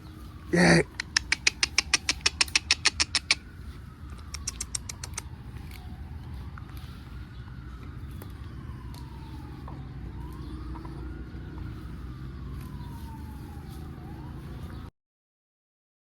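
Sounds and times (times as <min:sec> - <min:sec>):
distant siren wailing: 0:00.0 - 0:14.9.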